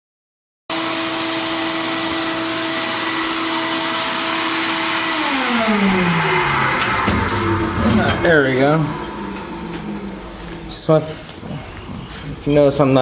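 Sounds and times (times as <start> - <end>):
steady machine hum: 0.8 - 12.5.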